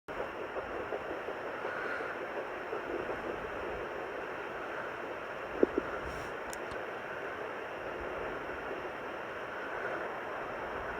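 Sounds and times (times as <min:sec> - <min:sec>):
doppler monitor hiss and static: 0:00.1 - 0:10.9
sharp clicks: 0:06.4 - 0:06.8.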